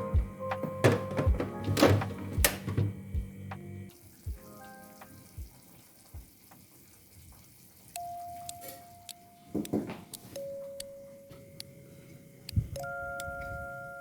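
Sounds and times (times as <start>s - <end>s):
soft low thumps: 0.2s - 3.5s
kitchen clatter: 0.6s - 2.9s
faint held tone: 10.4s - 14.0s.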